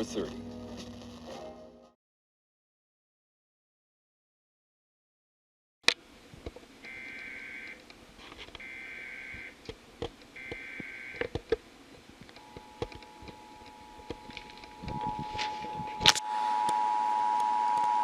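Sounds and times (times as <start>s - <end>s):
two-tone attention signal: 12.4s - 17.8s
buzzy data tones: 12.4s - 18.0s.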